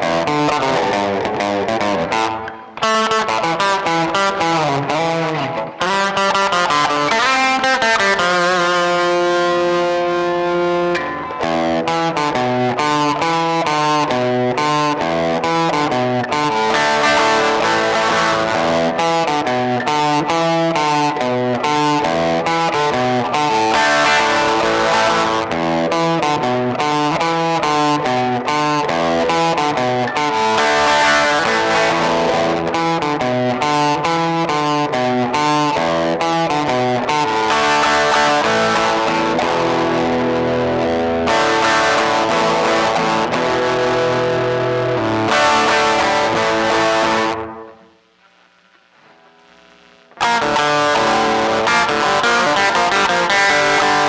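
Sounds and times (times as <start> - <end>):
distorted electric guitar riff: 0.0 - 54.0.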